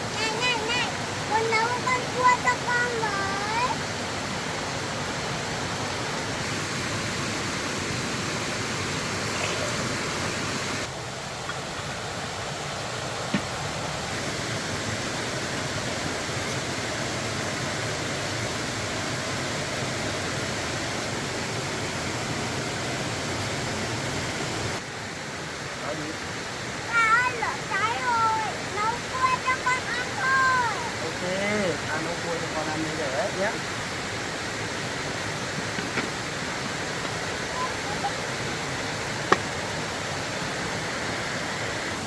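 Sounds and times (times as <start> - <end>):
rushing water: 0.0 - 42.0.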